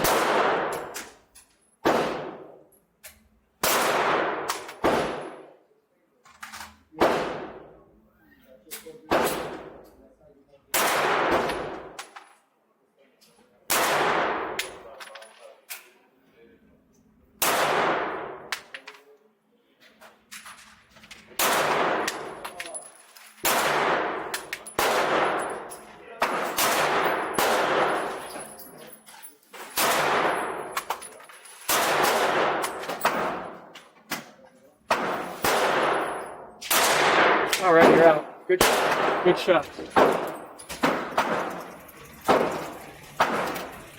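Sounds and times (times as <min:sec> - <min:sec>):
pistol shots echoing: 0:00.0 - 0:01.1, 0:01.8 - 0:02.6, 0:03.6 - 0:05.6, 0:07.0 - 0:07.8, 0:09.0 - 0:09.8, 0:10.7 - 0:12.0, 0:13.7 - 0:14.9, 0:17.4 - 0:18.7, 0:21.4 - 0:22.6, 0:23.4 - 0:28.4, 0:29.8 - 0:31.0, 0:31.7 - 0:34.3, 0:34.9 - 0:43.9.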